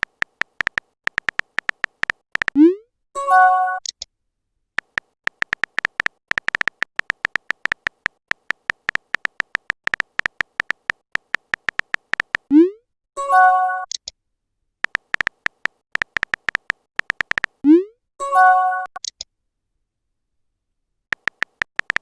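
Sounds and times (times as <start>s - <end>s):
phone keyboard typing clicks: 0.0s - 2.6s, 4.8s - 12.5s, 14.8s - 17.6s, 21.1s - 22.0s.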